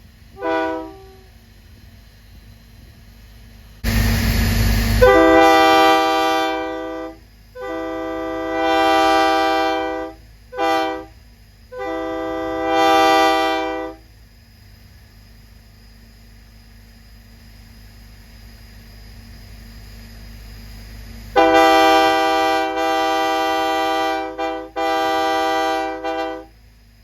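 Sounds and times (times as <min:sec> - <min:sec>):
locomotive air horn blasts: 0:00.4 - 0:01.3, 0:05.0 - 0:14.0, 0:21.4 - 0:26.6
rushing air: 0:03.8 - 0:05.3.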